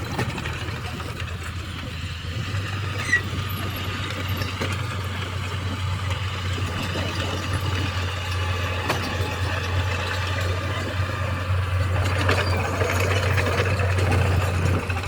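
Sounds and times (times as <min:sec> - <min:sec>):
heavy diesel engine running: 0:00.0 - 0:15.0
sharp squeak: 0:03.0 - 0:03.4.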